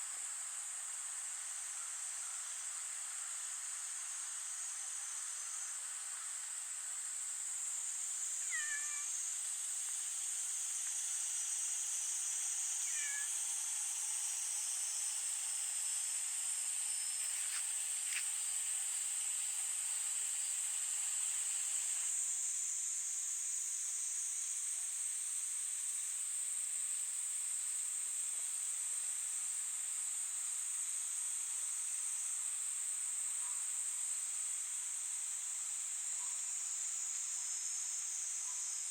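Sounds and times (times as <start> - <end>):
high-pitched insect chorus: 1.2 - 27.9, 29.9 - 38.9
cat meowing: 8.4 - 9.1, 12.8 - 13.3.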